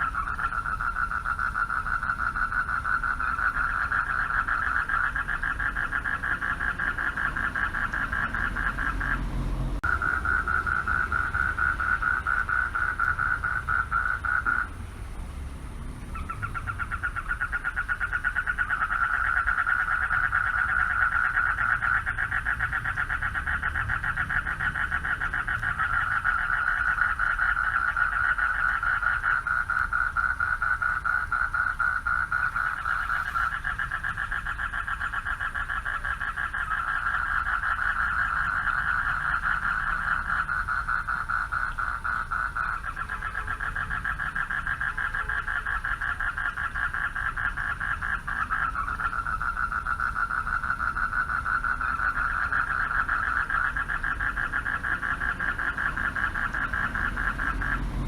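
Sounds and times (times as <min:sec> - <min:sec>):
higher-pitched frog calling: 0:00.0 - 0:14.9, 0:15.8 - 0:58.0
frog chorus pulsed calls: 0:00.0 - 0:15.2, 0:15.8 - 0:58.0.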